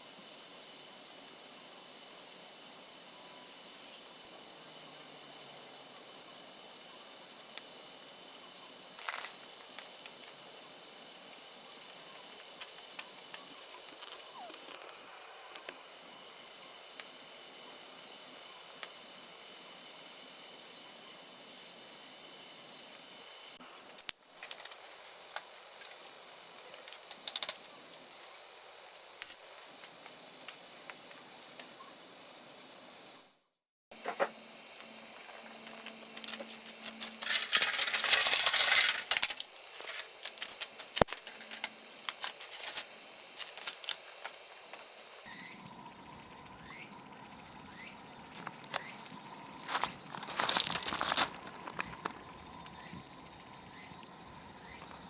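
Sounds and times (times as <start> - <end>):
wood fire crackling and popping: 0.4 - 4.2, 7.2 - 20.9, 23.8 - 31.8, 34.0 - 45.3.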